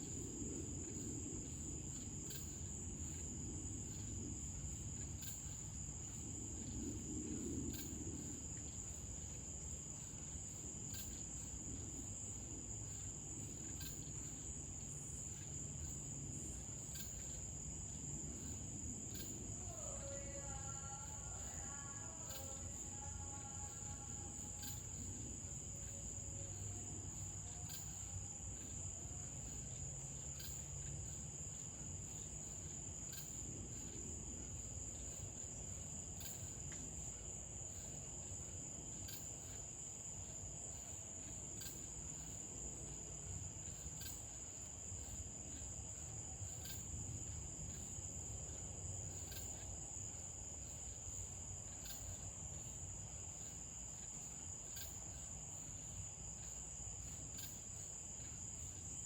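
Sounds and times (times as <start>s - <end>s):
crickets trilling: 0.0s - 59.0s.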